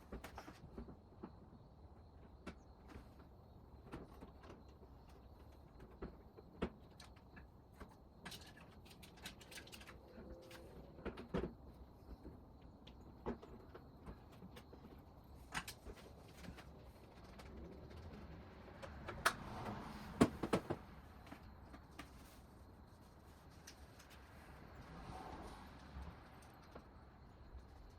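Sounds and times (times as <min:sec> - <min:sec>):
clicks and knocks of objects handled: 0:02.2 - 0:22.5.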